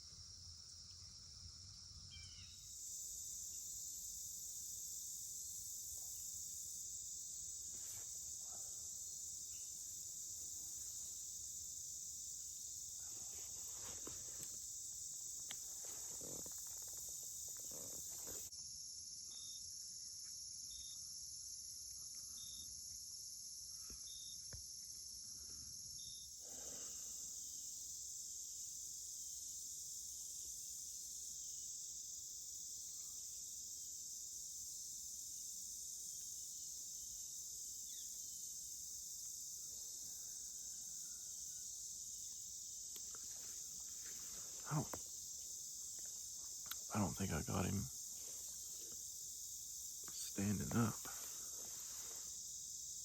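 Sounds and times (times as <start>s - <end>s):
crickets trilling: 0.0s - 53.0s
soft insect chirp: 0.0s - 53.0s
faint rustles: 13.0s - 18.5s, 43.0s - 45.1s, 50.1s - 52.4s.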